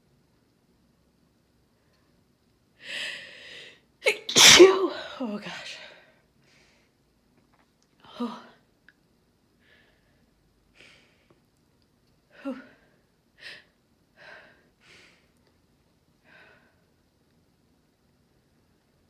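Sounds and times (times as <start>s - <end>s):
woman breathing heavily: 2.8s - 3.8s, 13.4s - 15.3s.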